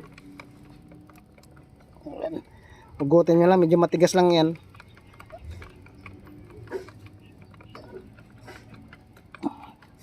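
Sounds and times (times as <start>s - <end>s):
plastic relay clicks and knocks: 3.0s - 10.0s.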